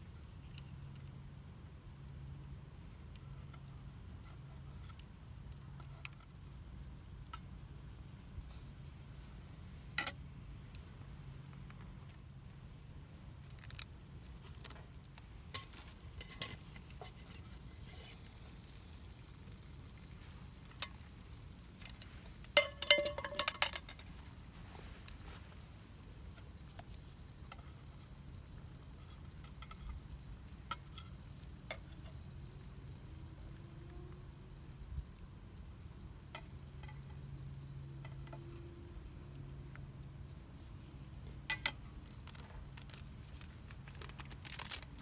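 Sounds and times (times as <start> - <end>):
campfire crackling and popping: 0.0 - 45.0.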